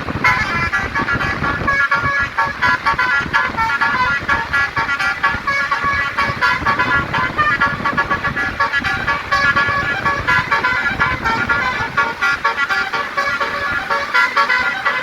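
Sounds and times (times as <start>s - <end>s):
musical air horns playing tune: 0.0s - 15.0s.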